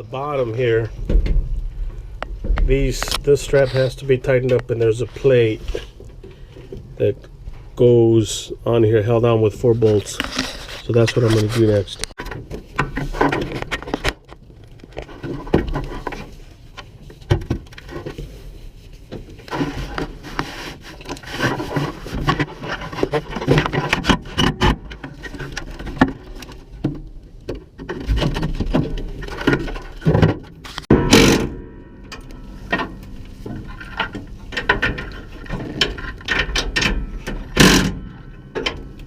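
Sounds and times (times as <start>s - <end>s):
hand tools clinking and scraping: 2.6s - 6.6s, 9.6s - 14.3s, 27.9s - 39.0s.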